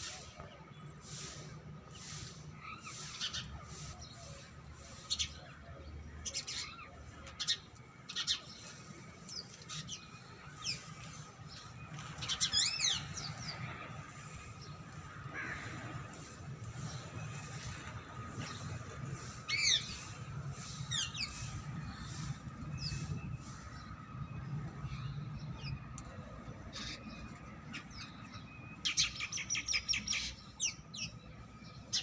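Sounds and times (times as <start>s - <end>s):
parakeets shrill calls: 19.4s - 23.1s.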